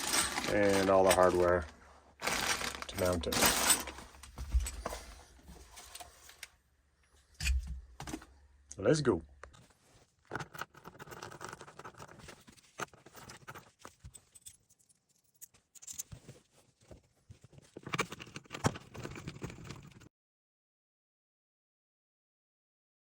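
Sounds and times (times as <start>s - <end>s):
rustling and scraping: 0.0s - 6.6s, 9.5s - 20.1s.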